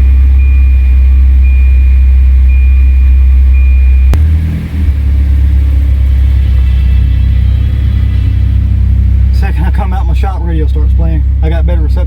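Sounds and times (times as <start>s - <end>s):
high warning beep: 0.0s - 4.2s
car engine running: 0.0s - 12.0s.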